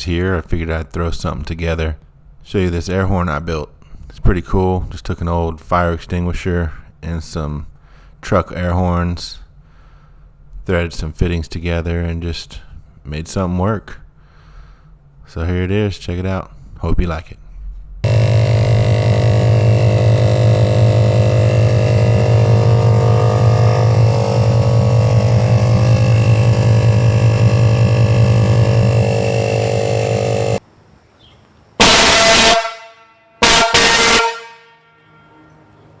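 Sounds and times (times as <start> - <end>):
air horn long blast: 18.0 - 30.6, 31.8 - 35.6
short hissy horn blasts: 18.0 - 30.6, 31.8 - 34.8.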